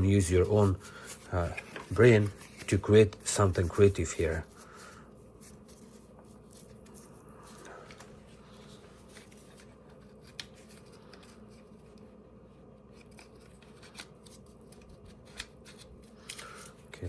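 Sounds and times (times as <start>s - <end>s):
cardboard rustling: 0.0s - 4.8s.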